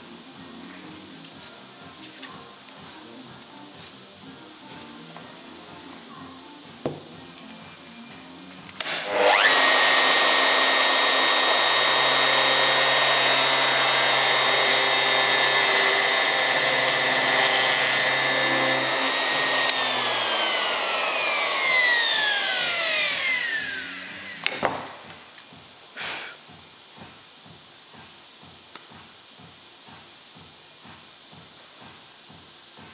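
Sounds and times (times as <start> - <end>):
power tool motor whining: 8.8 - 25.1.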